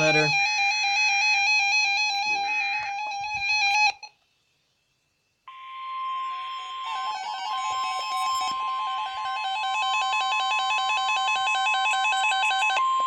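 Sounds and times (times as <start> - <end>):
steady alarm tone: 0.0 - 4.1, 5.5 - 13.0
beeping electronic melody: 5.5 - 13.0.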